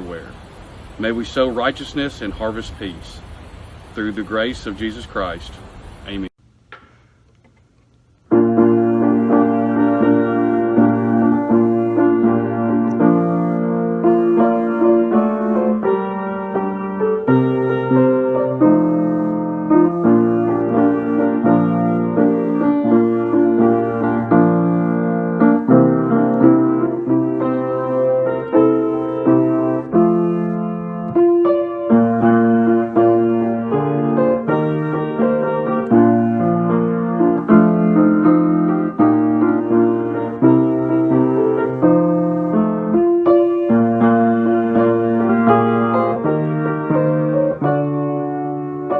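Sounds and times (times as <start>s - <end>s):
slow solo piano piece: 8.3s - 48.9s.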